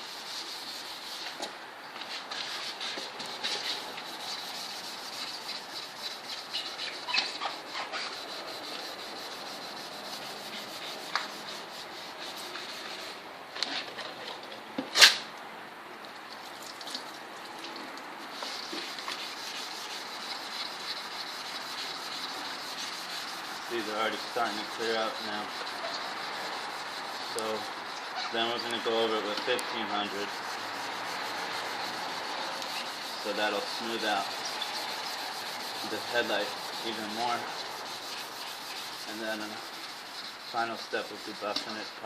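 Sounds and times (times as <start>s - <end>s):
sandpaper rubbing on plastic: 0.0s - 13.9s, 18.3s - 42.0s
sharp loud squeak: 6.3s - 8.3s, 28.1s - 28.5s.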